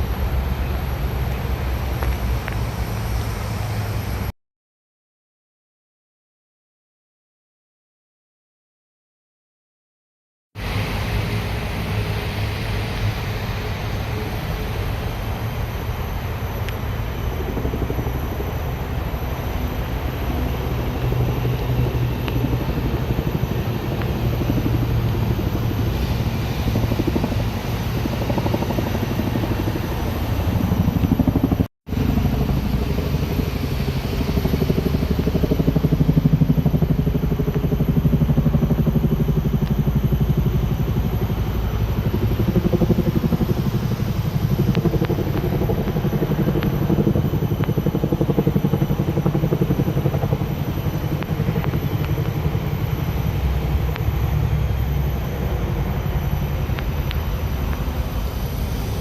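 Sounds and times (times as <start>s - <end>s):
motor engine running: 16.7s - 59.0s.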